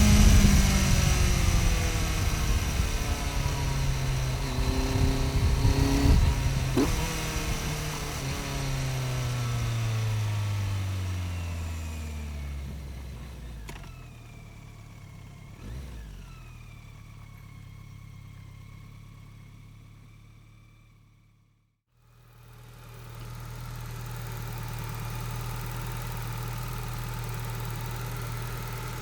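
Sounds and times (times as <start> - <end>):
motorcycle engine revving down: 0.0 - 21.4, 22.2 - 29.0
thump: 6.8 - 7.1.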